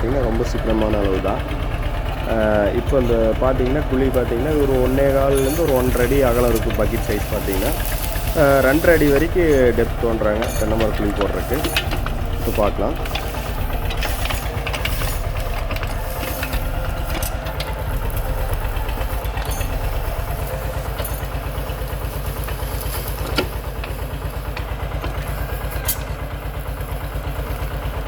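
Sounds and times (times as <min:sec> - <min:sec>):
diesel tractor engine throbbing: 0:00.0 - 0:28.0.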